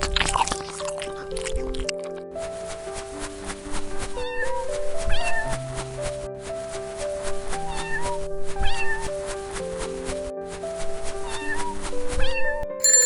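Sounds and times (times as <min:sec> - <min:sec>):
cat meowing: 0:07.9 - 0:09.0, 0:11.3 - 0:12.6.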